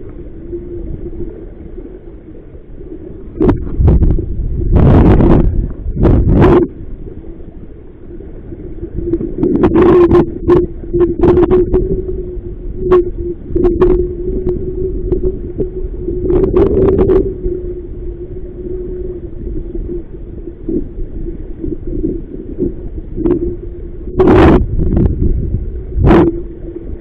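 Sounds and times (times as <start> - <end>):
steady hum: 0.0 - 27.0
wind rumbling on microphone: 0.0 - 27.0.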